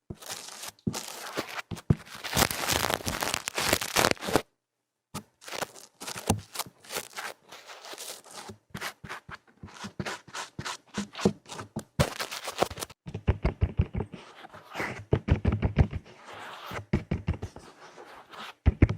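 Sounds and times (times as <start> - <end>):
quick taps and scratches: 5.2 - 18.9.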